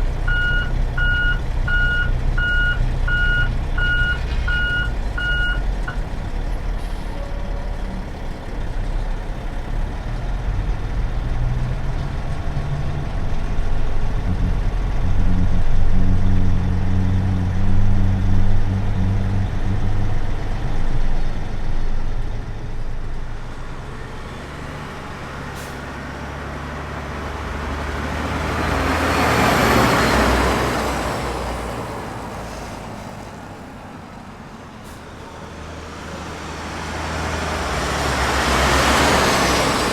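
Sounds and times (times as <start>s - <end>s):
diesel truck engine running: 0.0s - 39.9s
backup beeper: 0.3s - 6.0s.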